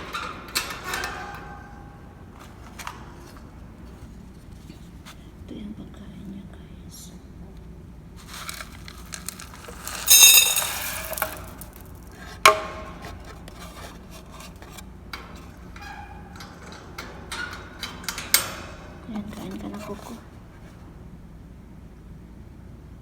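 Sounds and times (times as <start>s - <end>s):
bowls clicking and clinking: 8.2s - 14.7s
loud ringing clatter: 9.0s - 11.9s.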